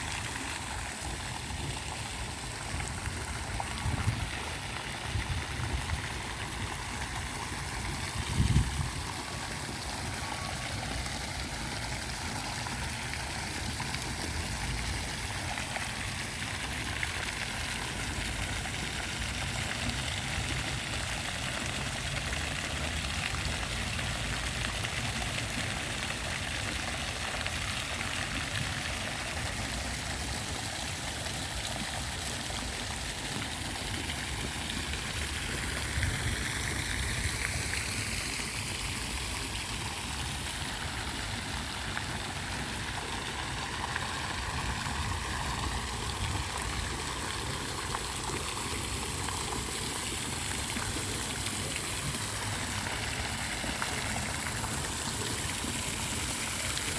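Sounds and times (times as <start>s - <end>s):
running water rushing: 0.0s - 56.9s.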